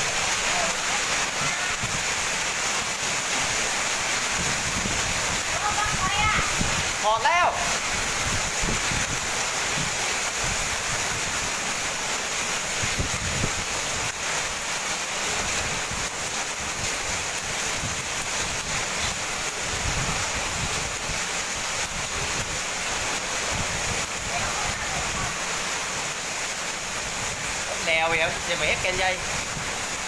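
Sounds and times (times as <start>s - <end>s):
hail and rain pouring down: 0.0s - 30.0s.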